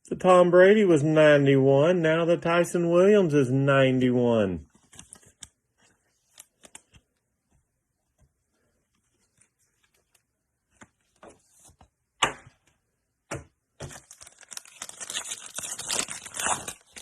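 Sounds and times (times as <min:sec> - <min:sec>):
wrapper crinkling: 0:13.8 - 0:17.0.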